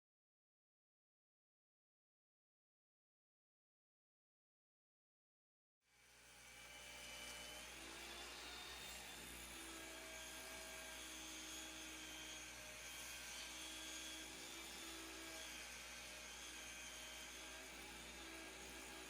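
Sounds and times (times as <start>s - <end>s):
power tool high whine: 5.9s - 19.0s.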